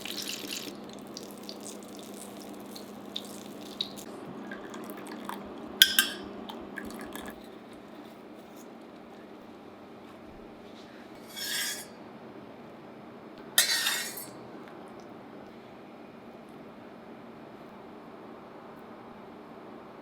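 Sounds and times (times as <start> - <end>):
tableware clinking: 5.8 - 7.3, 11.2 - 11.9, 13.6 - 14.4
tableware scraping: 11.2 - 12.0, 13.6 - 14.4.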